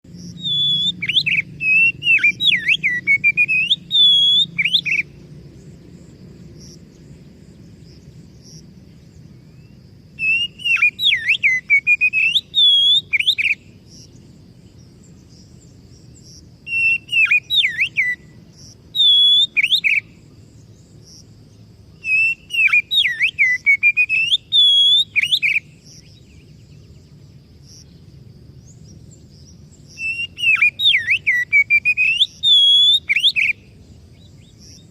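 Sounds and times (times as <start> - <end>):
bird singing whistled phrases: 0.3 - 5.1, 9.6 - 13.7, 16.6 - 20.2, 22.0 - 26.4, 29.9 - 34.9.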